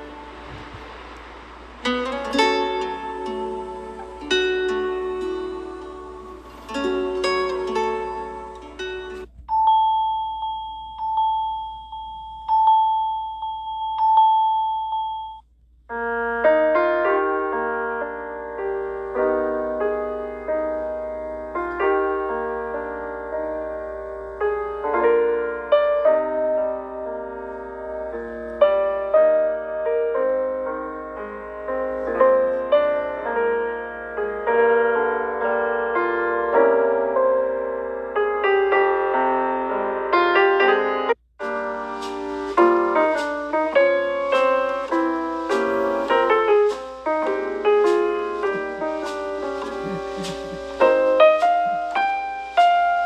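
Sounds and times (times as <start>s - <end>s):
piano-like ringtone: 1.9s - 15.4s, 41.5s - 53.0s
plucked ringtone melody: 2.4s - 15.4s
electronic chime: 9.4s - 15.4s, 45.6s - 46.4s.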